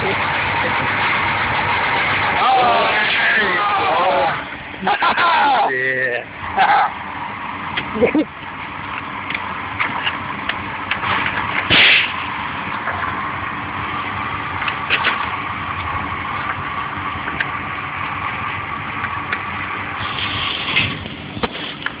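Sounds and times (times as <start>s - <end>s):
loud sharp gunshot: 11.7s - 12.2s.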